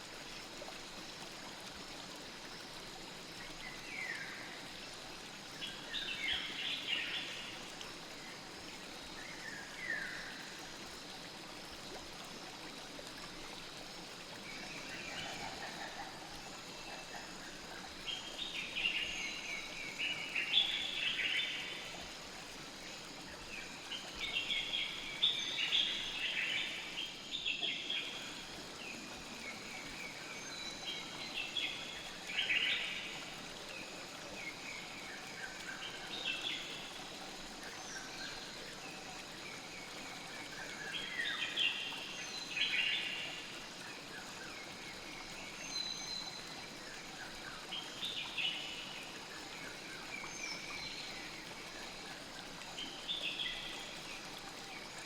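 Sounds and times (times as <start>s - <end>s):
flowing stream: 0.0s - 55.0s.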